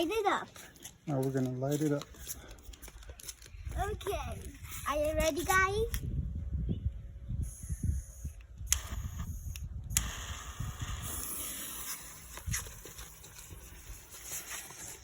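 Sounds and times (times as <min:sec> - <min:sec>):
wind rumble on microphone: 0:03.5 - 0:14.3
smoke bomb hissing: 0:07.4 - 0:14.5.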